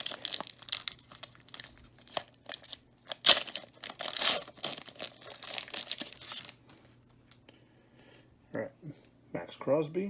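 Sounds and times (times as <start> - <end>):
wrapper crinkling and tearing: 0.0 - 6.9.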